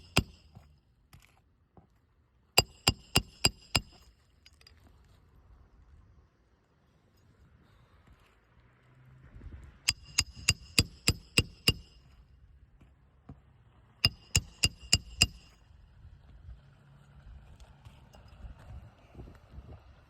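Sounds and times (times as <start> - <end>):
hammer striking nails: 0.0 - 0.6, 2.6 - 4.1, 9.9 - 12.0, 14.0 - 15.5.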